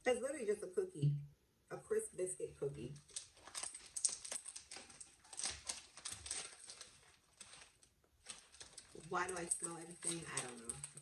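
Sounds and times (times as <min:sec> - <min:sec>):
plastic wrapper crinkling: 0:03.0 - 0:11.0.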